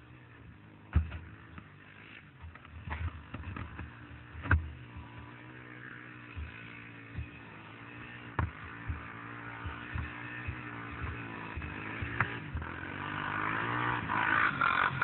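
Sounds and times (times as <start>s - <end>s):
atv engine running: 0.0s - 15.0s
sharp thumps and knocks: 0.9s - 1.8s, 2.4s - 5.3s, 6.2s - 12.8s.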